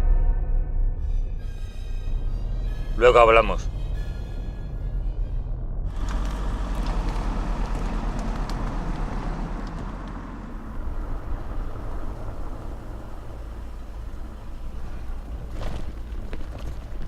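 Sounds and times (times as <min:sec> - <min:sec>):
low rumble and hiss: 0:00.0 - 0:17.0.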